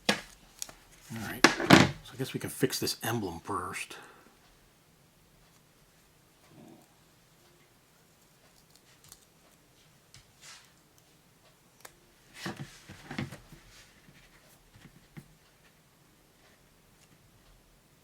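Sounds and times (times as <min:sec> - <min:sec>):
soft rustles: 0:08.2 - 0:11.6, 0:12.2 - 0:17.5.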